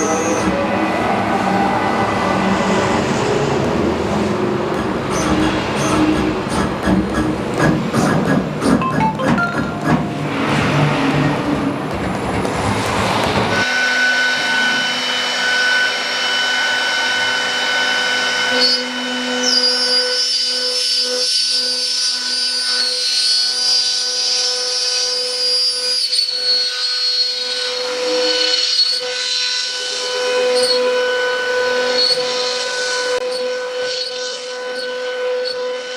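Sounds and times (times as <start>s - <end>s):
higher tone: 8.8s - 11.4s
router spindle whine: 13.6s - 35.9s.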